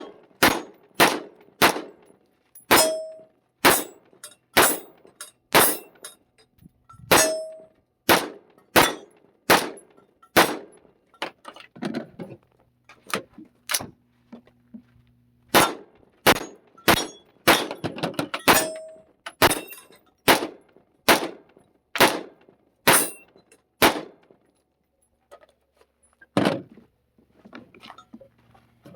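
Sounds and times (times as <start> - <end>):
rifle shots: 0.0 - 2.0, 3.6 - 4.0, 4.6 - 4.9, 5.6 - 5.8, 7.1 - 7.5, 8.1 - 9.8, 10.4 - 10.7, 15.5 - 17.8, 20.3 - 21.4, 22.0 - 23.1, 23.8 - 24.2.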